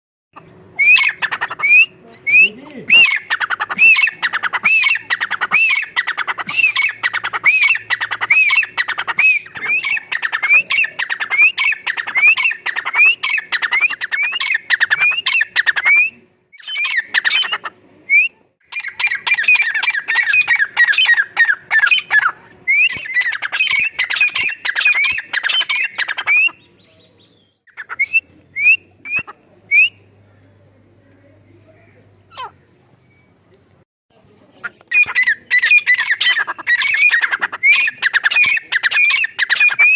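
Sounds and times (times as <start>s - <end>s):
francolin calling: 0.4s - 17.7s.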